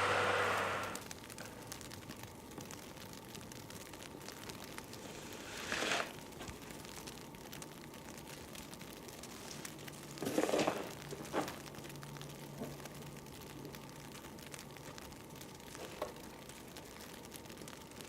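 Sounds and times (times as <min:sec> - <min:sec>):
faint crackling ticks: 0:00.0 - 0:18.0
shovel scraping snow: 0:05.0 - 0:06.1.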